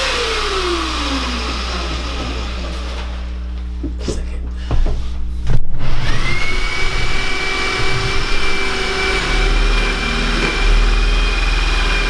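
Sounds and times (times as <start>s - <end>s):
electric drill whining: 0.0s - 3.2s, 5.9s - 12.0s.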